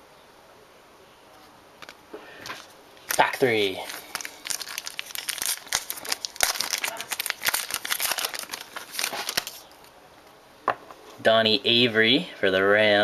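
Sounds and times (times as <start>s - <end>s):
wrapper tearing and crinkling: 3.0s - 9.9s.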